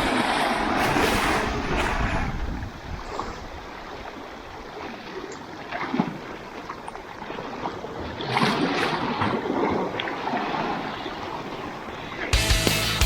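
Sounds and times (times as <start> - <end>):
sea waves splashing on rocks: 0.0 - 3.4.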